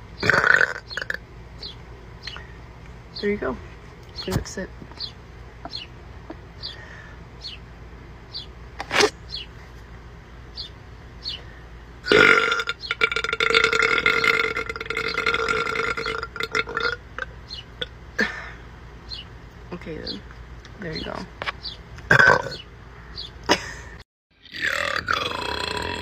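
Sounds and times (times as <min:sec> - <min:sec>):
woman's long deep burp: 0:00.2 - 0:01.2, 0:12.0 - 0:17.0, 0:22.1 - 0:22.6, 0:24.6 - 0:26.0.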